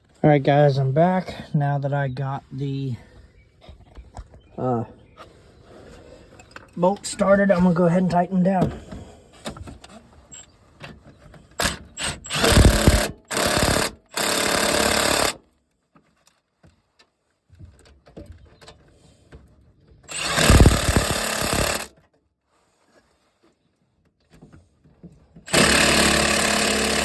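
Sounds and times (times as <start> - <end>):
impact wrench hammering: 11.6 - 15.4, 20.1 - 21.9, 25.5 - 27.0.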